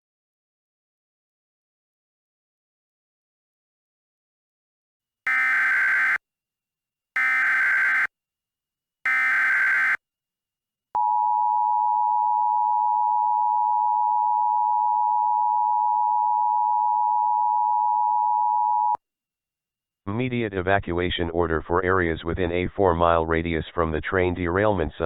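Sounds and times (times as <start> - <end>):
buzzy data bursts: 5.3 - 6.2, 7.2 - 8.1, 9.1 - 10.0.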